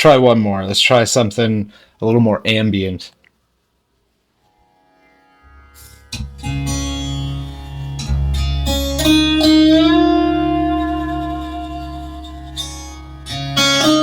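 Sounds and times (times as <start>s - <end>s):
ambient music over speakers: 5.6s - 14.0s.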